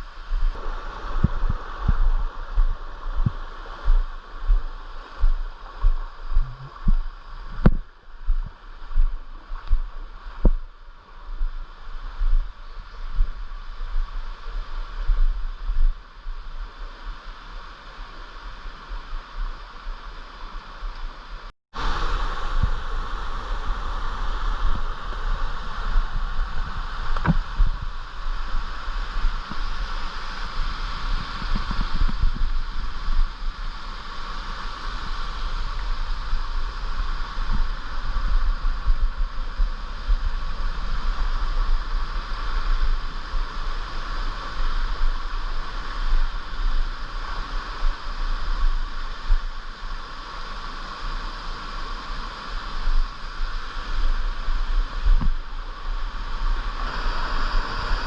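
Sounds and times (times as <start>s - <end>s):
low rumble: 0.0s - 16.7s
water rushing: 0.0s - 58.0s.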